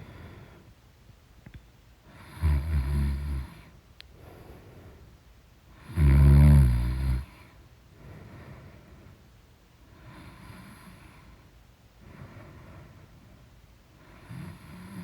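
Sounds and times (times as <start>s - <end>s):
woman snoring: 2.1s - 3.6s, 5.8s - 7.4s, 14.2s - 15.0s.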